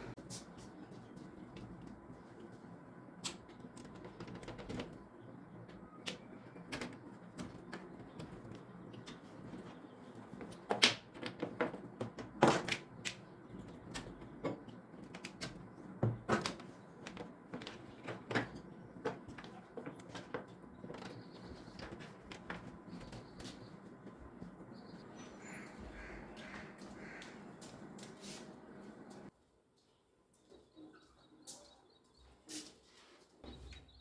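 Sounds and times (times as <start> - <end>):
computer case knocking and clattering: 13.6 - 23.4.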